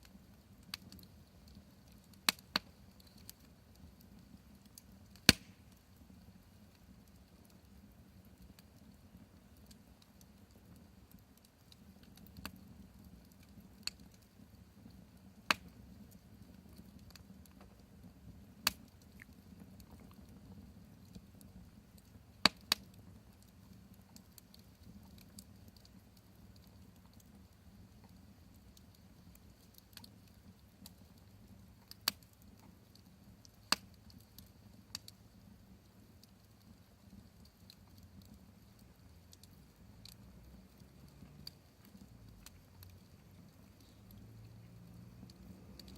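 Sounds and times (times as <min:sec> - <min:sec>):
campfire crackling: 0:00.0 - 0:45.9
sharp fire pops: 0:04.6 - 0:05.9, 0:15.4 - 0:15.8, 0:22.4 - 0:23.0, 0:33.7 - 0:34.2.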